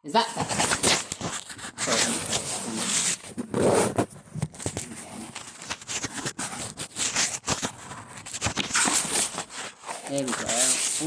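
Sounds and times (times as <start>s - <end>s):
camera handling knocks and scrapes: 3.2s - 10.0s.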